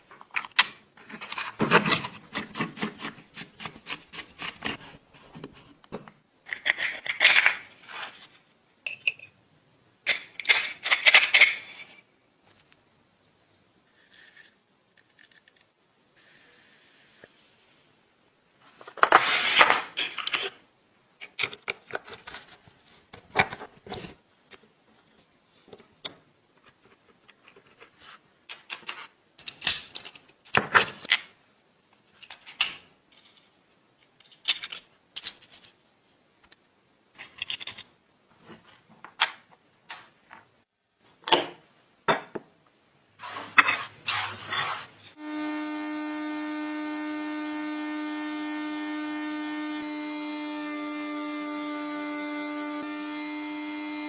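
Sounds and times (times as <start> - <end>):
small metal parts clinking: 10.1 - 12.0.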